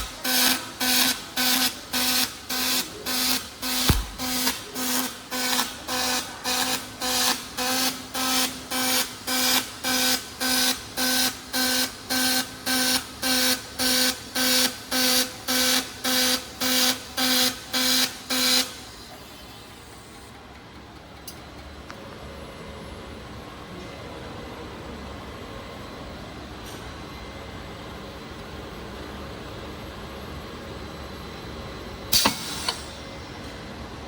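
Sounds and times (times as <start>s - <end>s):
arc welding buzz bursts: 3.2s - 4.6s.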